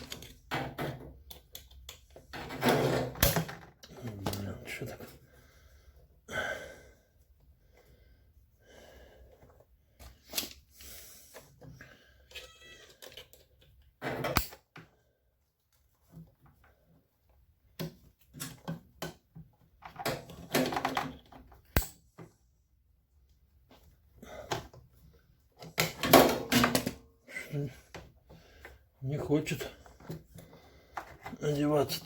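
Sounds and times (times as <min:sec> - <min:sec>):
parts clicking and rubbing: 0:00.0 - 0:03.4.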